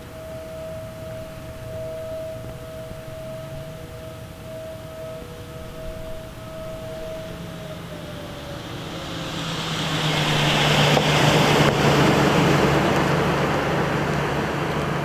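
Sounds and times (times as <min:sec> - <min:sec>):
distant two-tone warning siren: 0:00.0 - 0:15.0
vehicle passing close by: 0:05.8 - 0:15.0.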